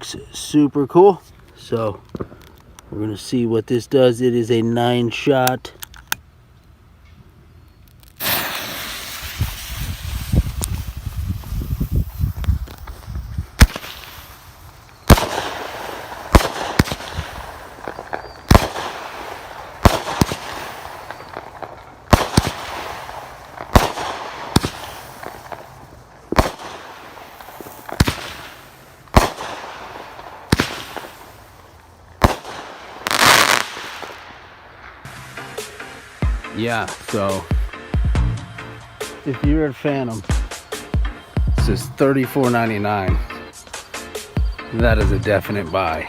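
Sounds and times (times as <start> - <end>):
firework bangs with crackling hiss: 8.1 - 38.1, 40.2 - 41.8.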